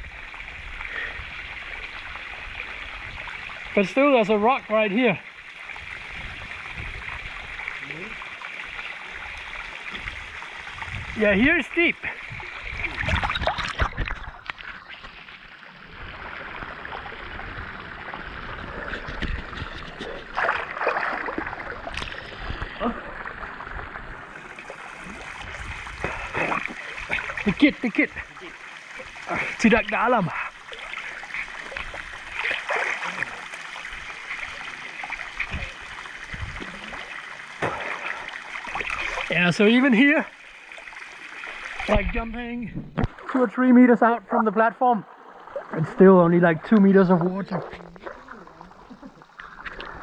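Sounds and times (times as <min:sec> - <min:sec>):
rush of running water: 0:00.0 - 0:50.0
water splashing and sloshing: 0:00.0 - 0:50.0.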